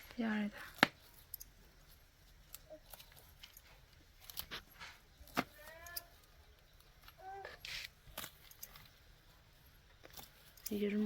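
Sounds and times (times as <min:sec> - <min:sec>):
stems snapping: 0:00.7 - 0:01.0.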